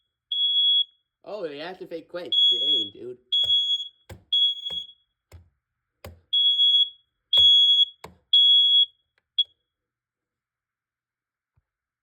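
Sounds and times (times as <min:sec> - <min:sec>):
smoke alarm beeping: 0:00.3 - 0:01.0, 0:02.3 - 0:05.1, 0:06.3 - 0:09.6.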